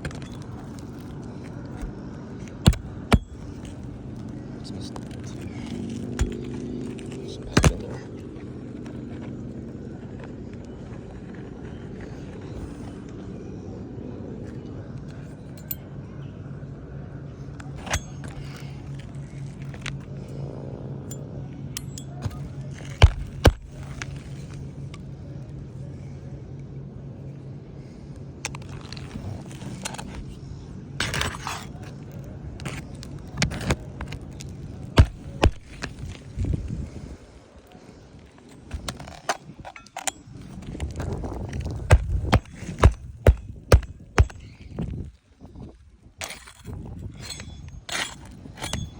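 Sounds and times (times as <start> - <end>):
steady low hum: 0.0 - 48.9
hammer striking roof nails: 22.8 - 23.8, 35.0 - 35.8, 41.8 - 44.5
scrape on shingle roof: 28.5 - 39.6, 40.4 - 45.0.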